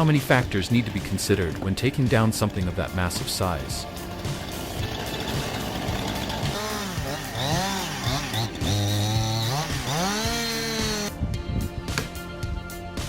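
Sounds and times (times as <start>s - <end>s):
chainsaw engine revving: 0.0s - 11.1s.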